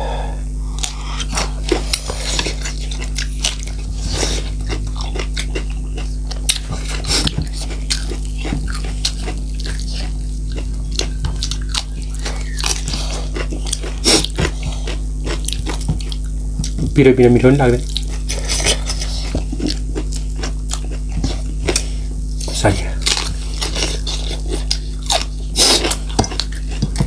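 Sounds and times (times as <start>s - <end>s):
person chewing crunchy food: 0.0s - 17.0s, 17.6s - 27.0s
low hum: 0.0s - 18.2s.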